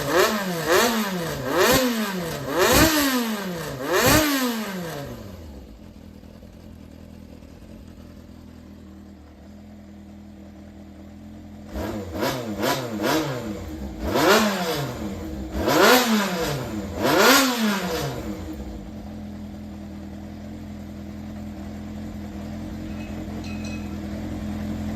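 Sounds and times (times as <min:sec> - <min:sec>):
motorcycle engine idling and revving: 0:00.0 - 0:24.9.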